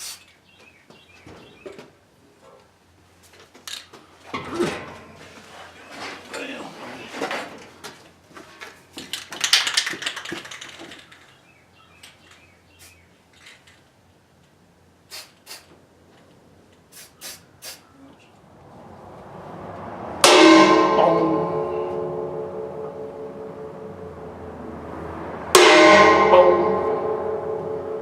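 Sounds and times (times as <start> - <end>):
tools and metal parts clicking: 8.6 - 12.5, 13.3 - 14.5
loud sound with ringing tones: 19.4 - 28.0.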